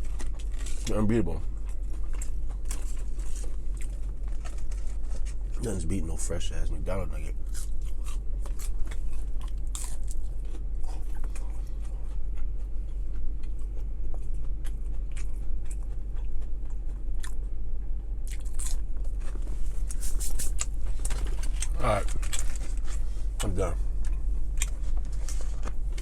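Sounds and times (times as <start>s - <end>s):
chewing crunchy food: 0.0s - 26.0s
steady low hum: 0.0s - 26.0s.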